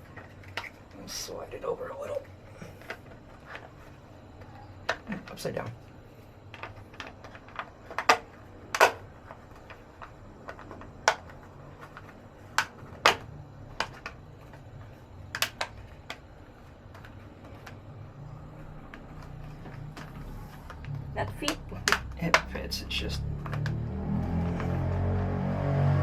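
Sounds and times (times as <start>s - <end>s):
plastic cover clicking and knocking: 6.5s - 14.6s, 15.3s - 17.9s, 18.8s - 22.6s.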